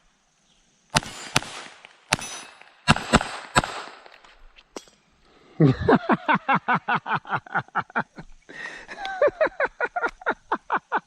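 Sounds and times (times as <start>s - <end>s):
person laughing: 5.6s - 11.0s.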